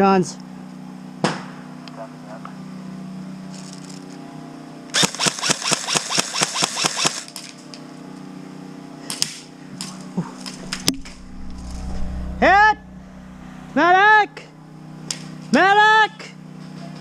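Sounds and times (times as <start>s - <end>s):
airsoft guns firing: 5.0s - 7.4s.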